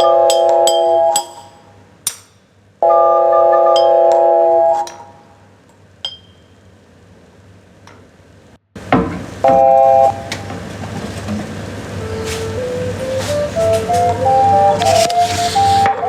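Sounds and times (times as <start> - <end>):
high glassy ping: 0.0 - 2.3, 6.0 - 6.6
kitchen-like clinking: 4.8 - 5.2, 6.0 - 6.6
steady hiss: 6.6 - 16.0
held chord: 12.0 - 16.0.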